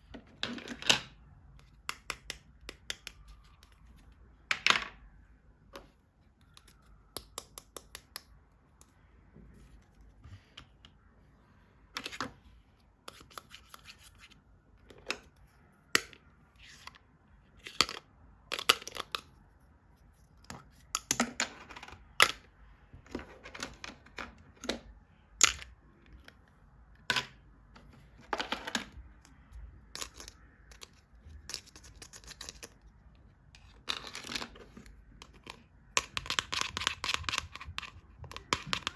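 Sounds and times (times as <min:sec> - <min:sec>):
plastic toys clicking and tapping: 0:00.5 - 0:03.8, 0:06.4 - 0:08.9, 0:17.7 - 0:19.3, 0:29.9 - 0:32.8, 0:33.6 - 0:38.9.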